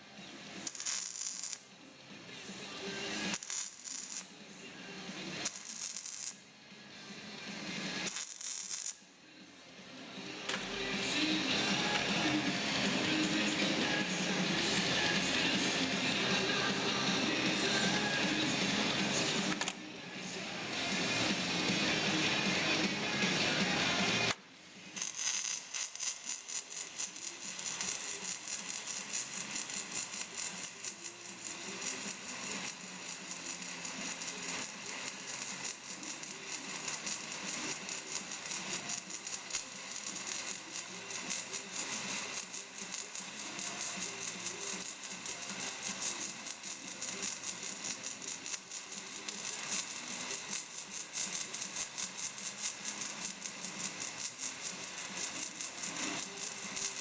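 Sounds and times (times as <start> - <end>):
welding arc crackling: 0.7 - 1.6, 3.4 - 4.2, 5.5 - 6.3, 8.0 - 9.0, 25.0 - 57.0.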